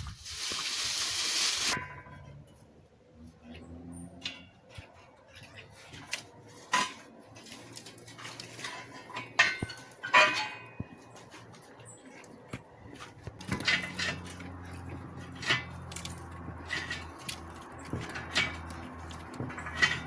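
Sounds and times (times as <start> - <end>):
light knocks and clinks: 13.3 - 20.0.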